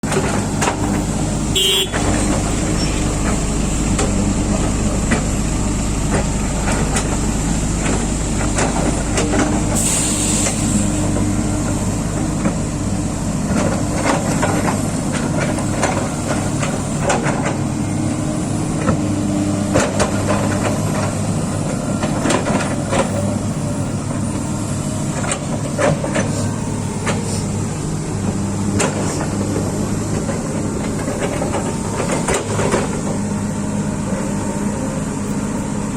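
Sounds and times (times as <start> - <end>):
heavy diesel engines running: 0.0 - 35.9
short hiss: 9.8 - 10.9.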